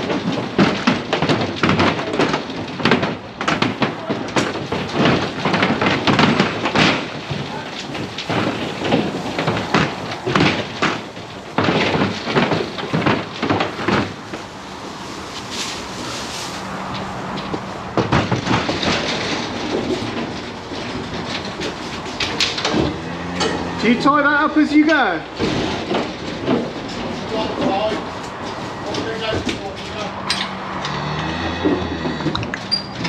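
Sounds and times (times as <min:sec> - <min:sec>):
cattle hooves clattering on metal: 0:00.0 - 0:33.0
knocks and bangs: 0:00.0 - 0:33.0.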